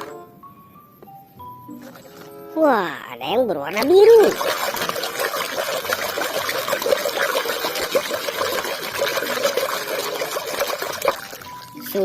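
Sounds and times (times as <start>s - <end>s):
water pouring and trickling: 3.6s - 12.0s
small splashes: 3.7s - 12.0s.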